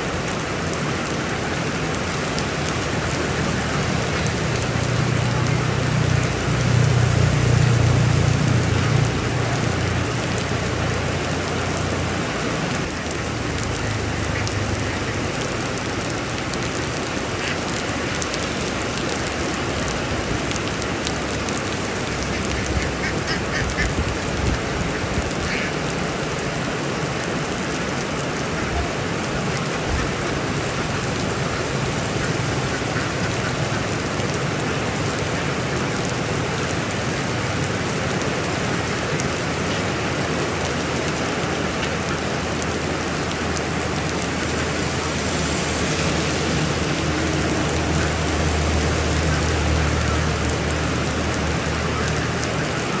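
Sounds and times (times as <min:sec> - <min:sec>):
heavy rain: 0:00.0 - 0:53.0
duck quacks: 0:22.1 - 0:24.0, 0:24.6 - 0:25.8, 0:31.5 - 0:33.9.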